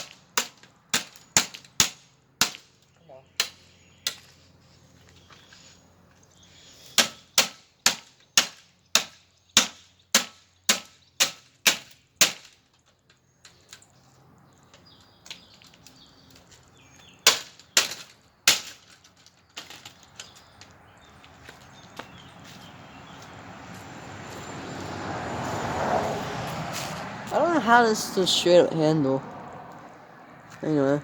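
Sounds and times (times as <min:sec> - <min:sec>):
hard blows striking a box fan: 0:00.0 - 0:02.8, 0:07.0 - 0:12.6.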